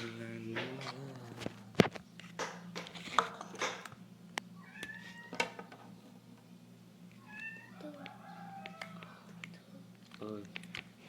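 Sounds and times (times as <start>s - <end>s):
cat meowing: 4.6s - 5.5s, 7.2s - 7.9s.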